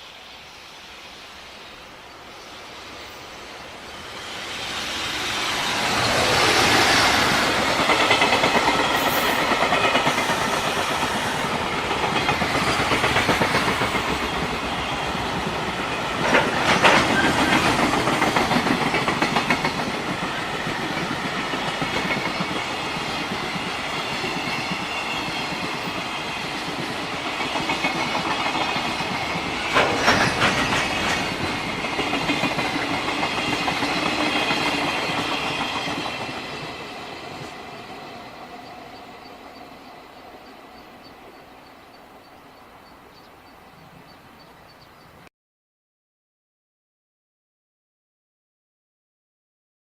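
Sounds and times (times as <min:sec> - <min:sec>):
train wheels clacking over rail joints: 0:05.0 - 0:38.1
train wagons clattering: 0:05.8 - 0:37.9.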